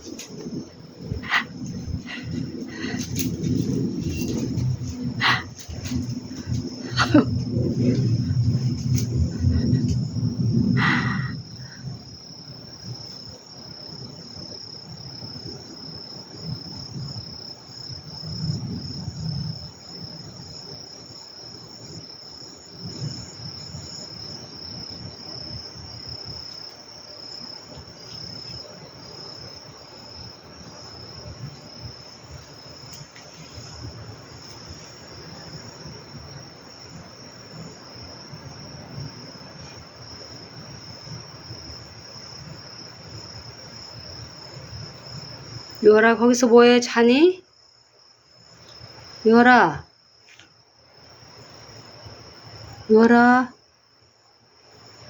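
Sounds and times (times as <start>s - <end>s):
faint low rumble: 0.0s - 12.3s
crickets chirping: 0.0s - 55.0s.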